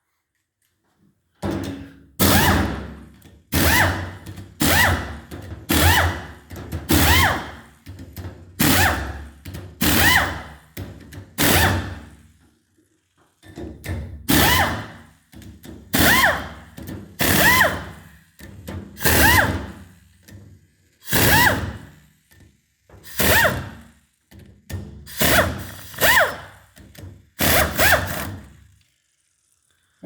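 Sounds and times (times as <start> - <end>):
pneumatic air tool whining: 2.2 - 8.0, 8.6 - 10.8, 11.4 - 12.3, 14.2 - 20.1, 21.0 - 22.1, 23.0 - 24.0, 25.0 - 28.7.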